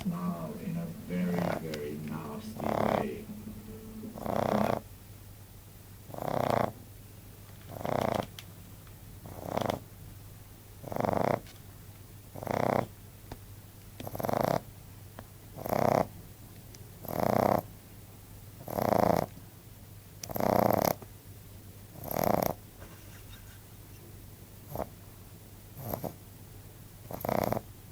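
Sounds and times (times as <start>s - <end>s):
puppy snoring: 1.1s - 1.7s, 2.4s - 3.2s, 4.2s - 4.8s, 6.1s - 6.8s, 7.7s - 8.3s, 9.2s - 9.8s, 10.8s - 11.4s, 12.4s - 12.9s, 14.0s - 14.7s, 15.6s - 16.1s, 17.0s - 17.7s, 18.6s - 19.4s, 20.2s - 21.0s, 22.0s - 22.6s, 24.7s - 25.0s, 25.8s - 26.2s, 27.0s - 27.7s.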